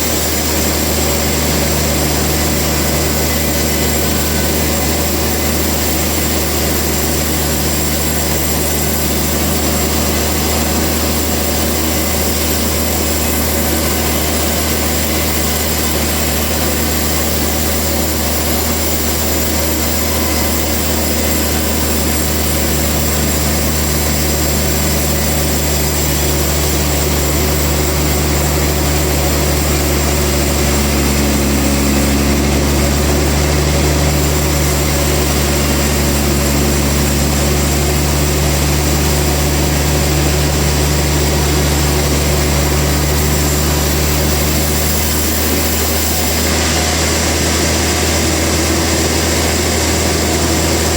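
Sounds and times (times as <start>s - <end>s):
higher machine tone: 0.0s - 50.9s
sawmill machinery humming: 0.0s - 50.9s.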